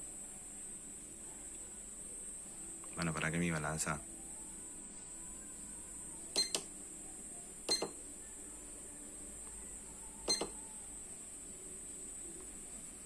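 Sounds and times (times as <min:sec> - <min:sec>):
short electronic beeps: 0:06.4 - 0:06.6, 0:07.7 - 0:08.0, 0:10.3 - 0:10.6.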